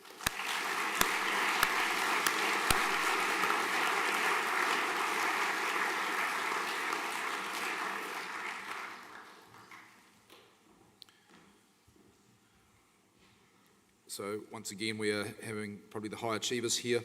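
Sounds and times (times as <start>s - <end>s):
audience applauding: 0.0s - 10.0s.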